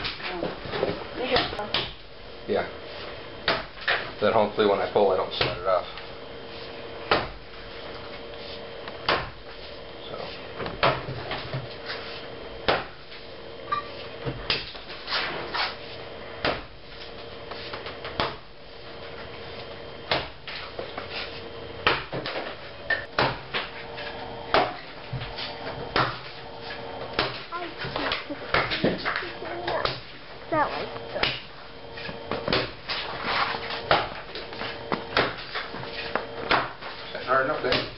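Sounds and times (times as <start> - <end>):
axe chopping wood: 1.3 - 2.0, 3.4 - 4.0, 5.4 - 5.6, 7.1 - 7.4, 9.0 - 9.4, 10.8 - 11.1, 12.6 - 13.0, 14.3 - 14.8, 16.4 - 16.8, 18.1 - 18.4, 20.1 - 20.6, 21.8 - 23.7, 24.5 - 24.9, 25.9 - 26.3, 27.1 - 29.2, 29.8 - 30.1, 31.2 - 31.5, 32.3 - 32.8, 33.8 - 34.2, 34.9 - 35.7, 36.4 - 36.8, 37.6 - 37.9.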